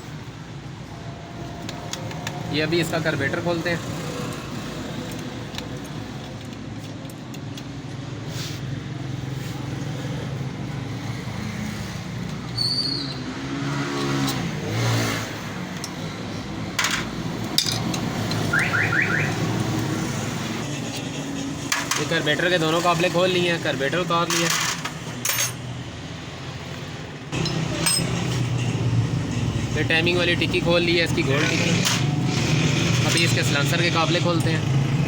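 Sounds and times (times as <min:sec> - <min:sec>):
vehicle engines running: 0:13.2 - 0:35.0.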